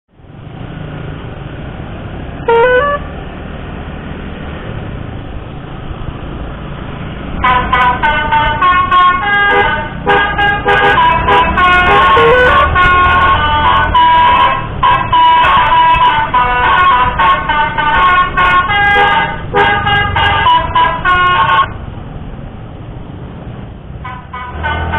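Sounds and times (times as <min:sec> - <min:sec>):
bus horn playing melodic tones: 0:02.4 - 0:03.2, 0:07.3 - 0:21.8, 0:24.0 - 0:24.9.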